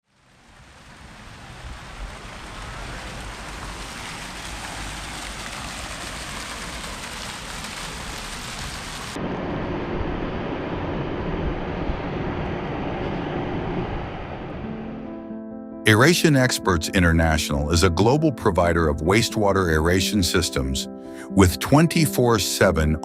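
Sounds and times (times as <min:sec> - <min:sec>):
rushing splashing water: 0:00.0 - 0:09.2
heavy low rumble: 0:09.1 - 0:18.0.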